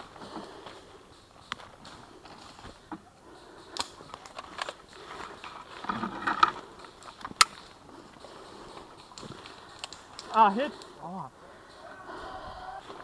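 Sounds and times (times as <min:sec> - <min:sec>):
airsoft gun cracks and clicks: 0:03.6 - 0:07.8, 0:08.7 - 0:10.3.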